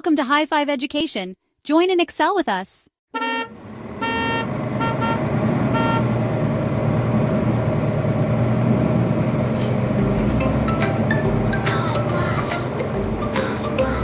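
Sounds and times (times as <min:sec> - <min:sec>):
vehicle horn toots: 0:03.1 - 0:06.2
low engine rumble: 0:03.2 - 0:14.0.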